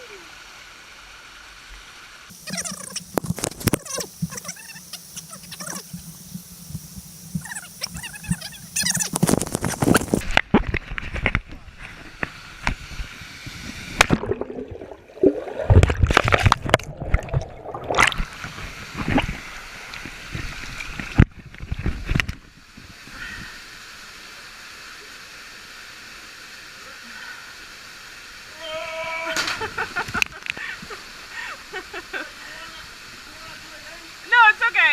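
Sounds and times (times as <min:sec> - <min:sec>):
water flowing: 0:00.0 - 0:34.9
water splashing and sloshing: 0:00.5 - 0:23.0.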